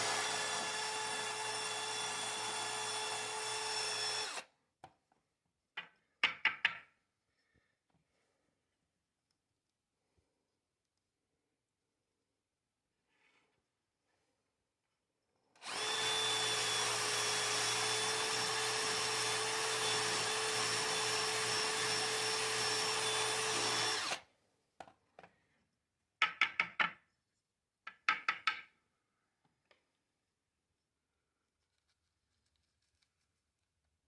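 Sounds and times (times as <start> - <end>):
electric power tool whining: 0.0 - 4.4, 15.6 - 24.2.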